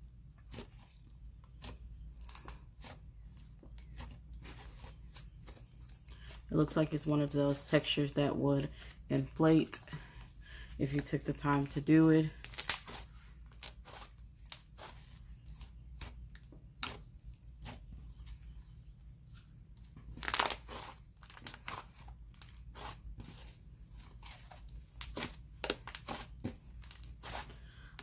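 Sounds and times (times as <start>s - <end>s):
slime crackling and popping: 12.4s - 14.9s, 20.2s - 22.5s.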